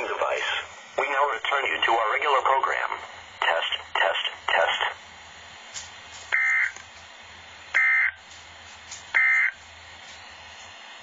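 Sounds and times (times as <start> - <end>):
buzzy data tone bursts: 6.3 - 6.8, 7.7 - 8.2, 9.1 - 9.6.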